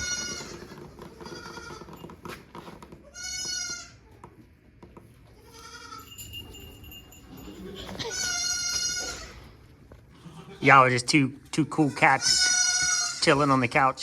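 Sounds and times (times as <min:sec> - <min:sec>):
goat kids bleating: 0:00.0 - 0:02.1, 0:03.0 - 0:04.3, 0:05.2 - 0:06.2, 0:07.3 - 0:10.8, 0:11.7 - 0:13.8.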